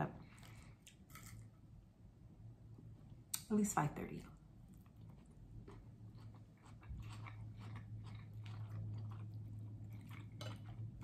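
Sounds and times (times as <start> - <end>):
steady low hum: 0.0 - 11.0
person chewing crunchy food: 4.6 - 11.0.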